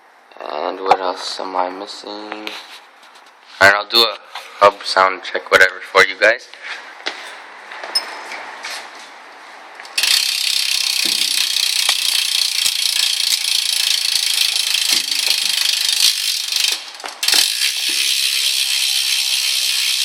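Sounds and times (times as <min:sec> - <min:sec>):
bicycle hub ratchet clicking: 0:09.9 - 0:20.0.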